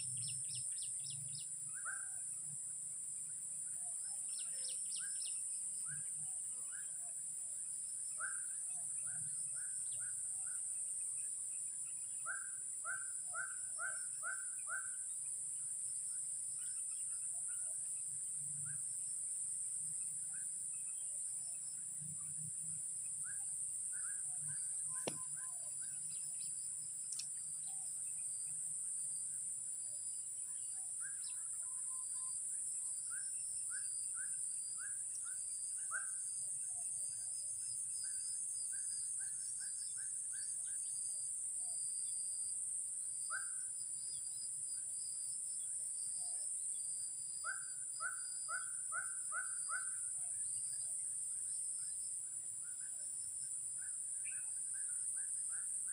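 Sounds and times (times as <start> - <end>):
bird chirping: 3.2 - 7.1, 23.0 - 41.2
sharp click: 25.0 - 25.3, 27.1 - 27.3.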